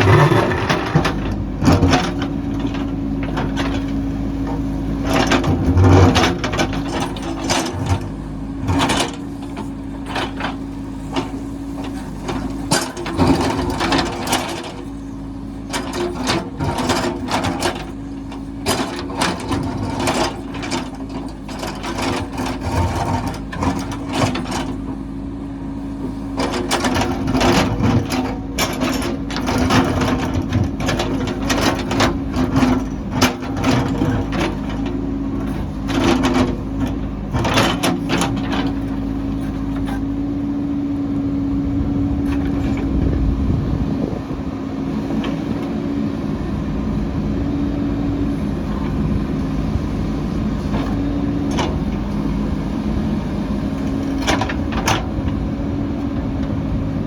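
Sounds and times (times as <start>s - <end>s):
diesel engine running: 0.0s - 57.0s
metal clanks and knocks: 26.4s - 40.1s.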